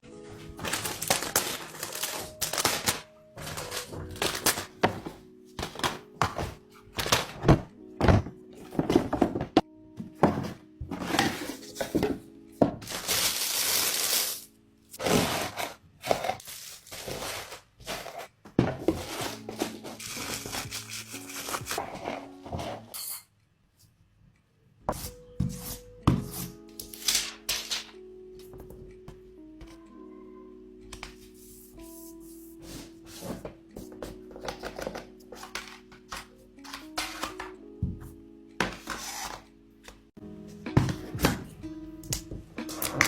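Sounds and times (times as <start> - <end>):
soft background music: 0.0 - 23.2, 24.7 - 43.0
packaging tearing: 0.6 - 4.7, 12.8 - 14.4, 16.2 - 17.6, 19.4 - 21.8
packaging thunks and taps: 0.6 - 13.0.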